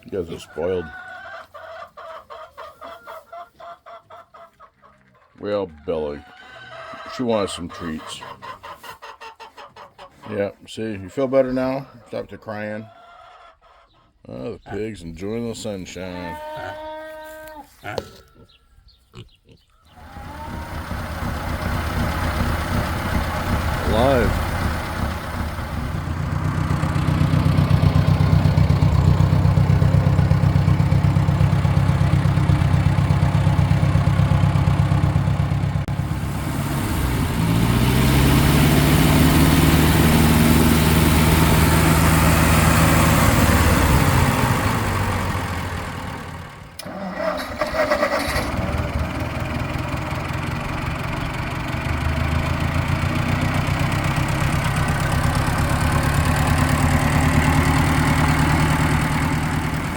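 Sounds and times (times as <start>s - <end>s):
tractor engine running and revving: 20.0s - 59.9s.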